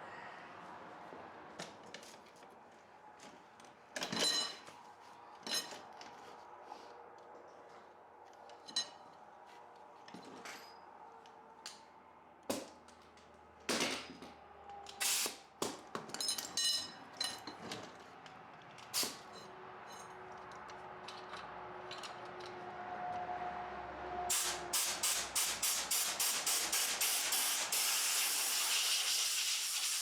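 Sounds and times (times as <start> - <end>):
metal tools clinking: 16.1 - 17.8.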